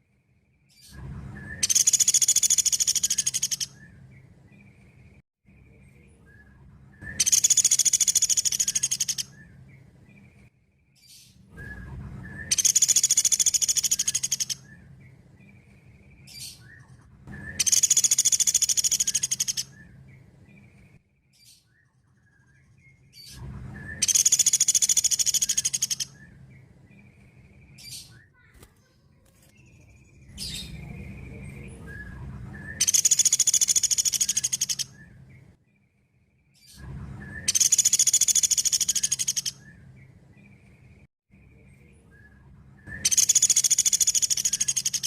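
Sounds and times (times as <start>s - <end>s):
bird high-pitched rapid trills: 1.4s - 4.0s, 7.0s - 9.6s, 12.4s - 14.8s, 17.4s - 20.7s, 23.8s - 26.4s, 32.7s - 35.2s, 37.4s - 39.8s, 42.9s - 45.0s
soft bird call notes: 29.7s - 35.2s.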